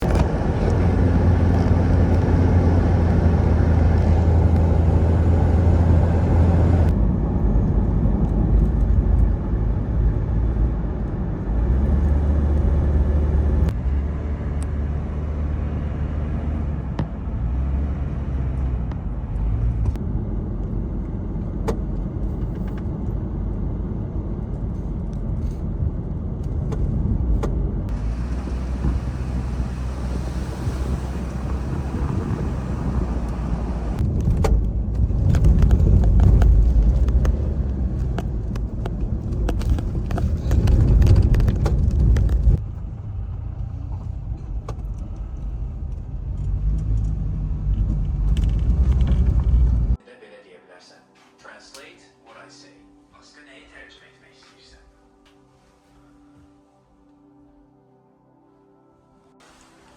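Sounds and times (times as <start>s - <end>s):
low rumble: 0.0s - 50.0s.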